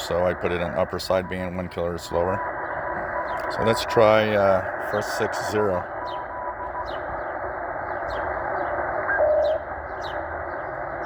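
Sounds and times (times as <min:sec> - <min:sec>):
radio static hiss: 0:00.0 - 0:11.0
short steady radio tone: 0:00.0 - 0:11.0
bird chirping: 0:02.0 - 0:04.0, 0:06.0 - 0:11.0.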